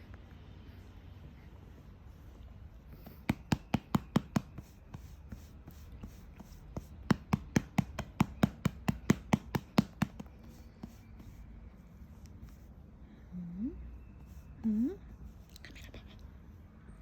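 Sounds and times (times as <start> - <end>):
hand patting baby's back: 3.0 - 5.4, 6.7 - 10.5.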